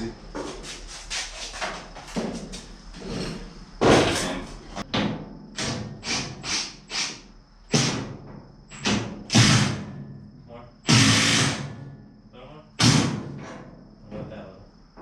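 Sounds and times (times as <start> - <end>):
knocks and bangs on steel car body: 3.8 - 5.9.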